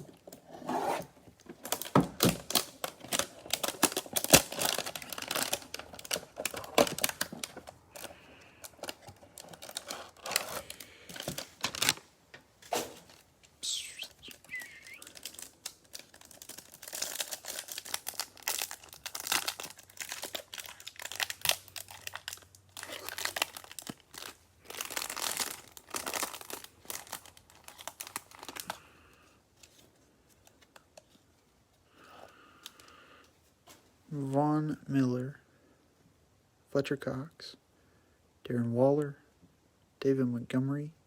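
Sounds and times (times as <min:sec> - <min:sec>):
plastic wrapper tearing and crinkling: 0:01.4 - 0:12.1, 0:13.8 - 0:28.9.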